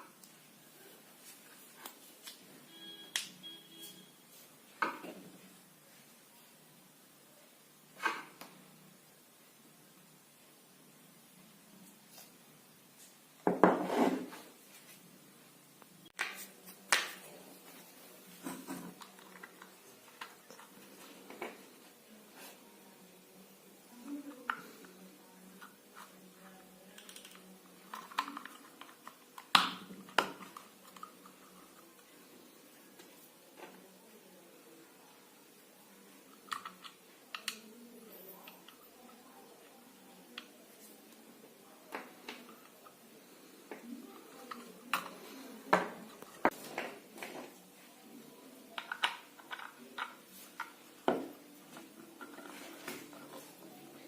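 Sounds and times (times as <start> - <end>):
small objects clicking and tapping: 26.9 - 31.5.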